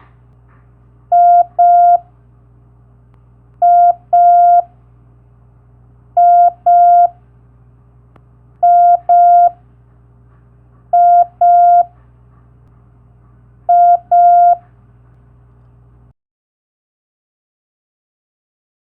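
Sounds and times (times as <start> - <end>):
faint low hum: 0.0 - 16.1
morse code beeps: 1.1 - 2.0, 3.6 - 4.7, 6.2 - 7.2, 8.6 - 9.6, 11.0 - 11.9, 13.7 - 14.6.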